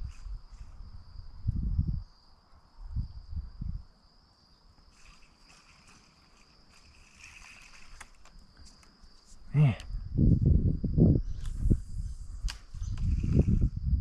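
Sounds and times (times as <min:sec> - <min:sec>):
wind rumble on microphone: 0:00.0 - 0:03.9, 0:09.8 - 0:14.0
insects buzzing: 0:00.0 - 0:14.0.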